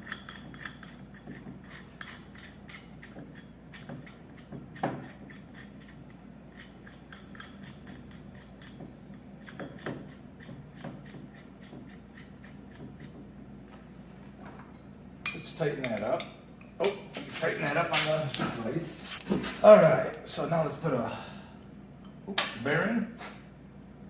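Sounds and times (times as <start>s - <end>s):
nut clicking and scraping on bolt: 0.0s - 13.2s.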